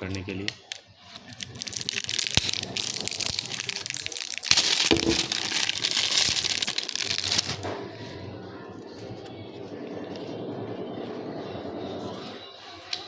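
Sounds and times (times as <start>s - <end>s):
packaging crinkling and rustling: 1.1s - 7.6s.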